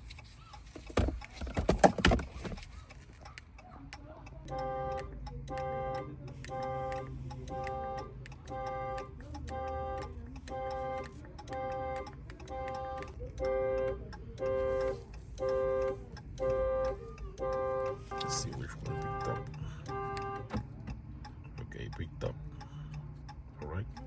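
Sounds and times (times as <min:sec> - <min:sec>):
dual-tone car horn honking: 0:04.5 - 0:20.8.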